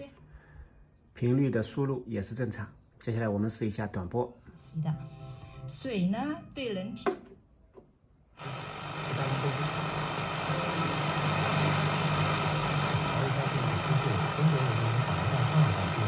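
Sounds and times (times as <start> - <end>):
radio static hiss: 8.3 - 16.0
faint radio signal: 8.4 - 16.0.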